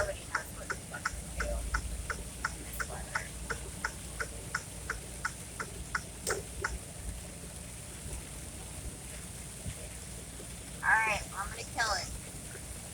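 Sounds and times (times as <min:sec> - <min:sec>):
car indicator clicking: 0:00.0 - 0:06.8
car driving hum: 0:00.0 - 0:12.9.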